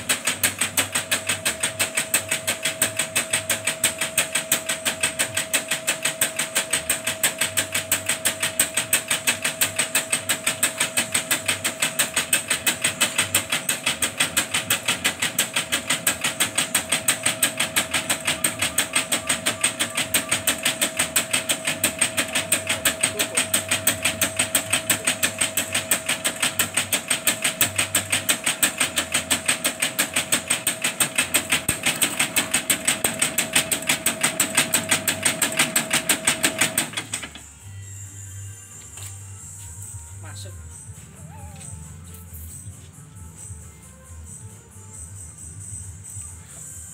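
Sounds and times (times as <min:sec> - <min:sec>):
motor hum: 0:00.0 - 0:46.9.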